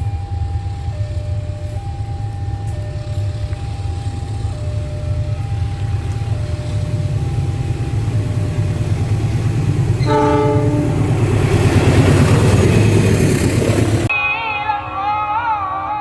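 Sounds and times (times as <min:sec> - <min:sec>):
train rumbling: 0:00.0 - 0:14.1
locomotive horn blast: 0:02.3 - 0:12.4.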